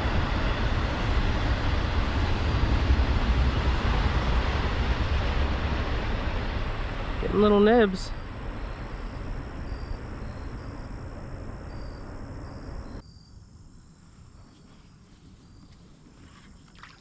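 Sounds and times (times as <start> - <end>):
steady rushing noise: 0.0 - 13.0
high insect chirps: 7.9 - 17.0.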